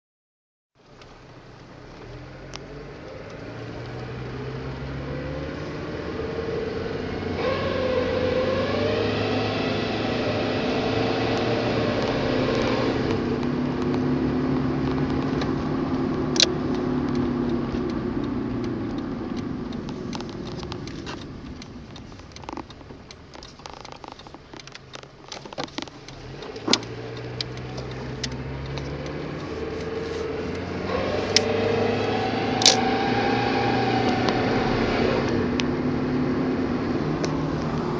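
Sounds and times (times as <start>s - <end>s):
car engine accelerating: 0.8s - 37.9s
sharp clicks and knocks: 11.3s - 31.6s.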